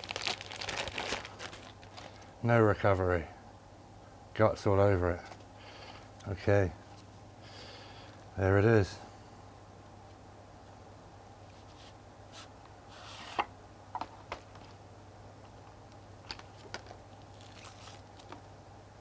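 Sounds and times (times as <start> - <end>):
packaging rustle: 0.0 - 2.4.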